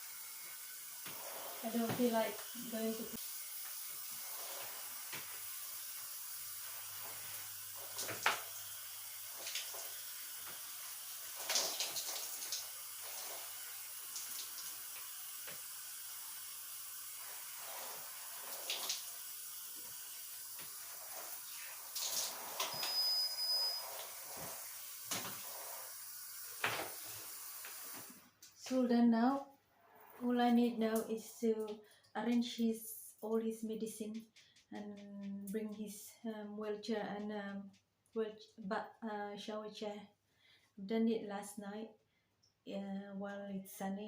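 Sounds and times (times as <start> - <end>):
tap running: 1.0 - 2.4, 19.7 - 25.8.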